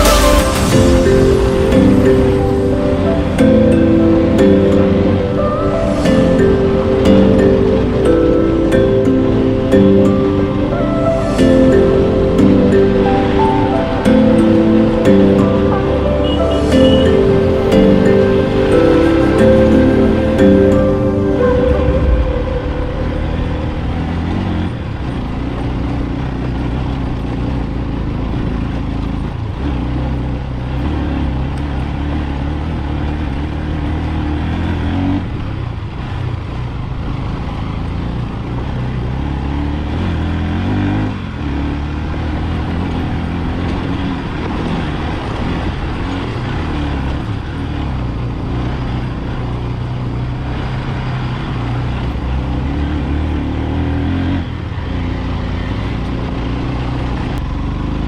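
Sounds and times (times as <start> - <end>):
wind and road noise: 0.0 - 58.0
motorcycle engine revving: 23.6 - 58.0.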